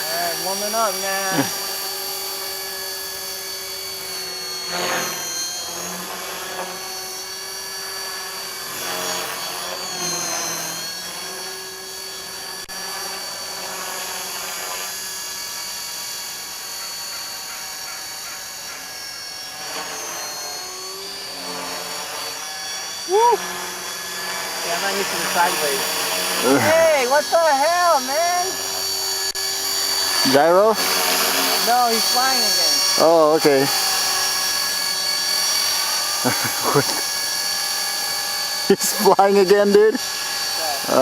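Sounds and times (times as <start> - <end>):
rc helicopter rotor whine: 0.0 - 41.0.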